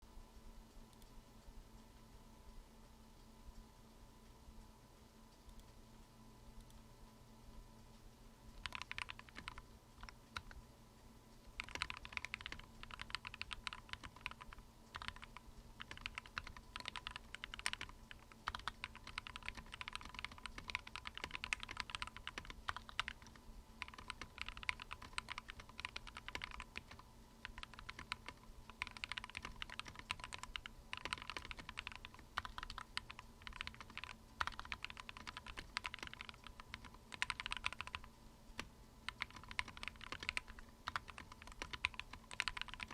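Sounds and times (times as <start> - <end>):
mechanical keyboard typing: 8.5 - 10.6, 11.5 - 42.9.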